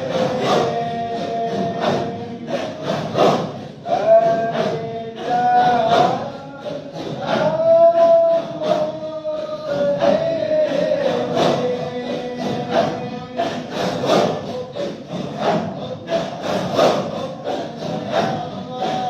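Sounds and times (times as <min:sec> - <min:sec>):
group of voices chanting: 0:00.0 - 0:19.0.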